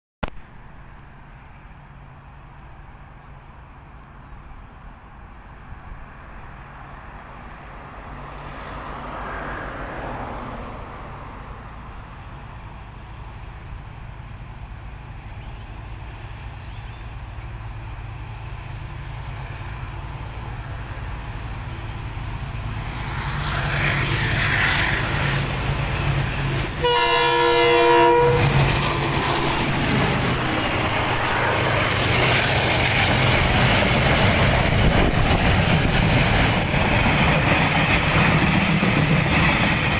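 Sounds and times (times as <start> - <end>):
train rumbling past: 0.5 - 39.9
locomotive engine drone: 11.1 - 39.9
train horn blast: 26.0 - 30.6.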